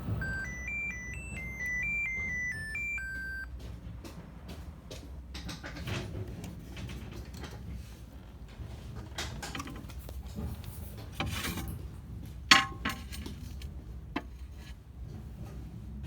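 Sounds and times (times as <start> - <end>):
low steady hum: 0.0 - 3.5
small clicks and knocks: 9.0 - 11.7.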